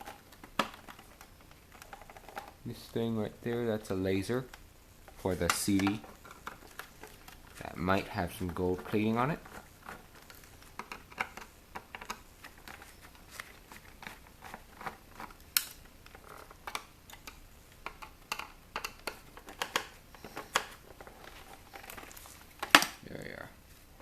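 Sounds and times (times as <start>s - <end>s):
hands and tools clicking on plastic: 0.0s - 2.6s, 4.4s - 23.0s.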